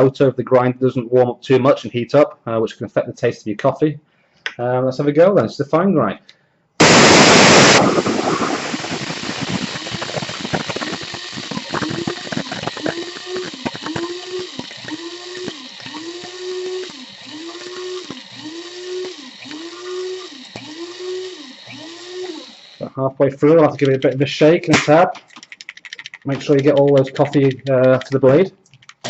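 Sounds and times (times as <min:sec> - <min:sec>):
coffee grinder motor whine: 0:06.8 - 0:22.9.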